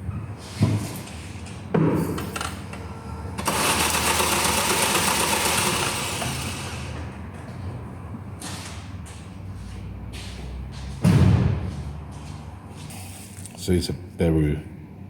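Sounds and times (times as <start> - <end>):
starter motor cranking engine: 3.4 - 7.0.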